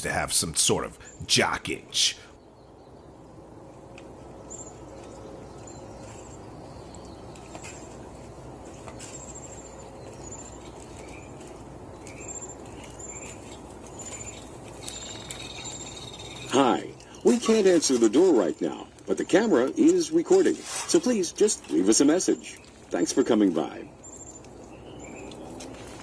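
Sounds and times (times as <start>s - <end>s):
steady low outdoor noise: 0.0s - 26.0s
high bird chirps: 9.0s - 17.8s.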